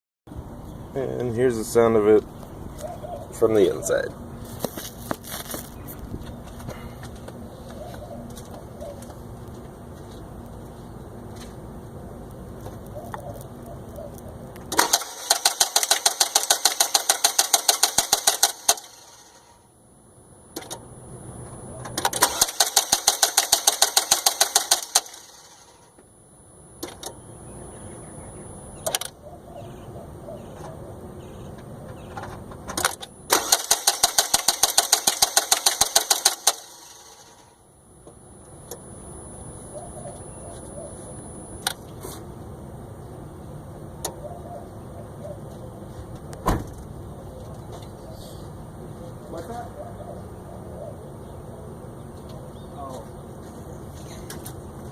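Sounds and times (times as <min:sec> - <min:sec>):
rapid starter clicking: 0:14.7 - 0:19.4, 0:21.9 - 0:25.7, 0:32.8 - 0:37.4.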